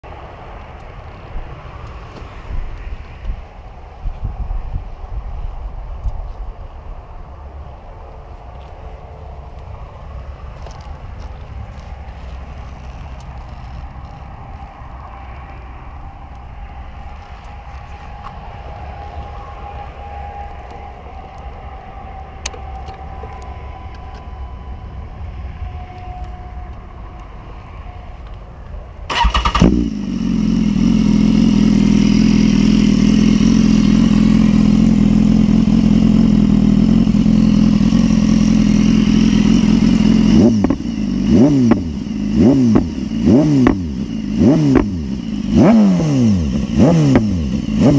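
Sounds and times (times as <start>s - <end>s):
motorcycle engine starting and idling: 9.4s - 21.6s, 29.0s - 47.9s
motorcycle throttle blips: 29.1s - 47.9s.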